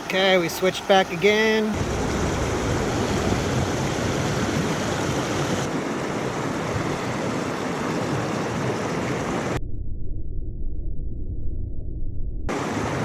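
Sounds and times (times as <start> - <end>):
creek rushing and splashing: 0.0 - 9.6, 12.5 - 13.0
muffled low rush: 1.7 - 13.0.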